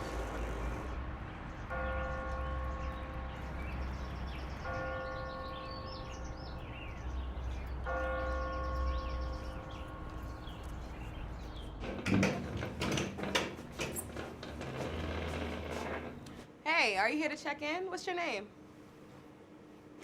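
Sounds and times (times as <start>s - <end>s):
birds chirping: 0.0s - 12.0s
sharp knocks and clicks: 11.8s - 16.4s.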